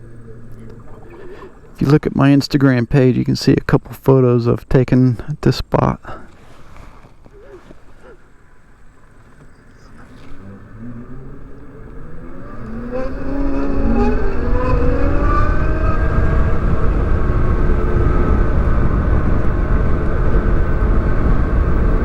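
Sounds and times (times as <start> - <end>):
electric motorcycle motor whine: 8.3 - 22.0
wind rush on microphone: 10.8 - 22.0.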